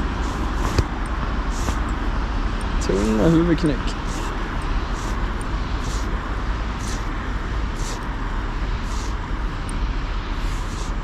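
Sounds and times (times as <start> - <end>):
low city rumble with traffic: 0.0 - 11.0.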